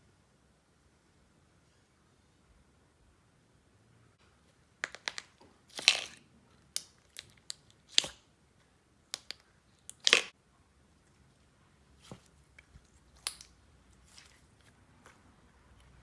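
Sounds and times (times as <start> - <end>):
slime clicking and crackling: 9.2 - 10.3.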